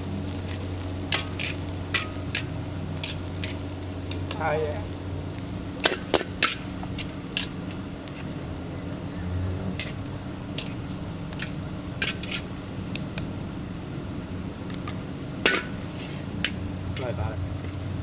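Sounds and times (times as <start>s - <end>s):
low machine hum: 0.0s - 18.0s
metal spatula scraping a wok: 9.7s - 10.8s, 11.4s - 12.5s, 15.5s - 17.1s.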